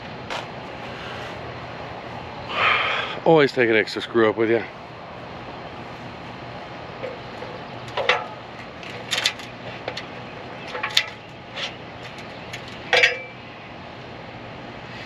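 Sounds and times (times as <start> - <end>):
steady low hum: 0.0 - 15.0
metal downspout knocks and clanks: 7.0 - 13.4.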